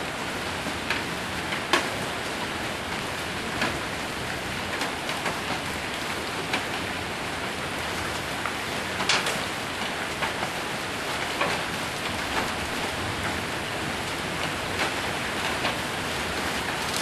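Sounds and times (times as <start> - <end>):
heavy rain drumming on a roof: 0.0 - 17.0
hailstones cracking: 14.7 - 17.0.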